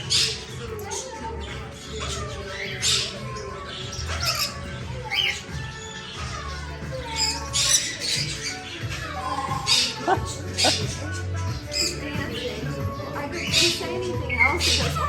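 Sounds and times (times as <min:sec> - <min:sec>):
background music: 0:00.0 - 0:15.0
parrots squawking and chirping: 0:00.0 - 0:15.0.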